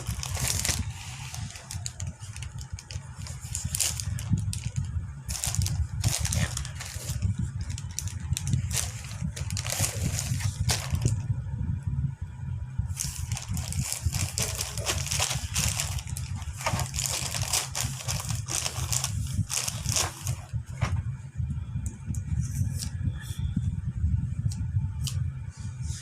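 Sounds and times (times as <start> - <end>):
plastic packaging crinkling: 0.0 - 11.2, 13.0 - 20.5
steady low rumble: 0.0 - 26.0.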